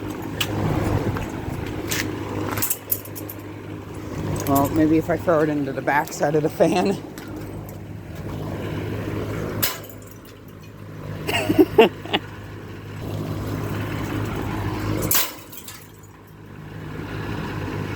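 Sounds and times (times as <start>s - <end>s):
box fan motor hum: 0.0s - 17.9s.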